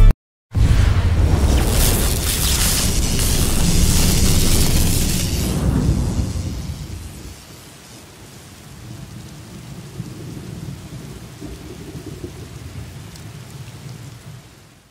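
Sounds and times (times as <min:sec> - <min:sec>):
thunder rumbling: 0:00.6 - 0:07.9, 0:08.6 - 0:12.9
rain hissing: 0:00.6 - 0:11.0.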